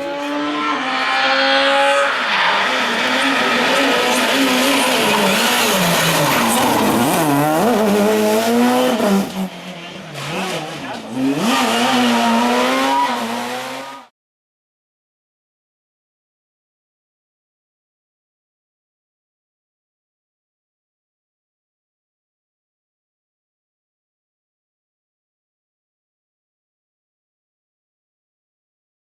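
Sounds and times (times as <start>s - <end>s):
rally car engine revving: 0.0s - 14.1s.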